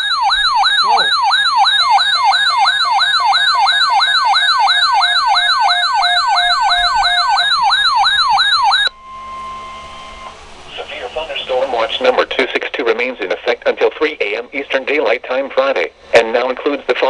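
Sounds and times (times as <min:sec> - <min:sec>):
electronic alert tone wailing: 0:00.0 - 0:10.4.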